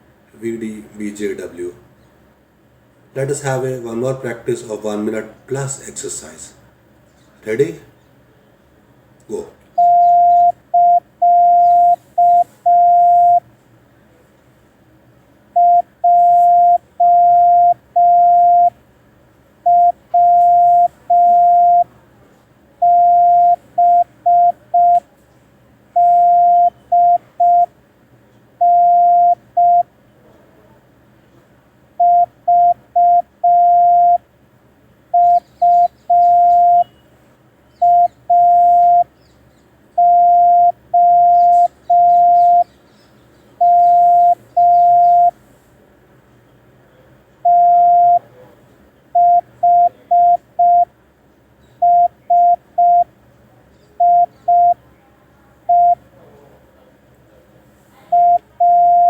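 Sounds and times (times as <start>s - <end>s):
morse code tone: 9.8s - 13.4s, 15.6s - 18.8s, 19.7s - 21.9s, 22.8s - 25.0s, 26.0s - 27.7s, 28.6s - 29.9s, 32.0s - 34.2s, 35.2s - 37.0s, 37.8s - 39.1s, 40.0s - 42.6s, 43.6s - 45.4s, 47.5s - 48.2s, 49.2s - 50.9s, 51.8s - 53.1s, 54.0s - 54.8s, 55.7s - 56.0s, 58.1s - 59.0s.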